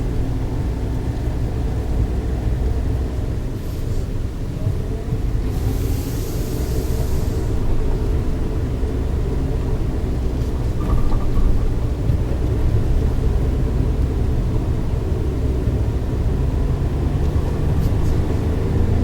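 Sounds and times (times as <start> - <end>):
car engine rumbling: 0.0 - 19.0.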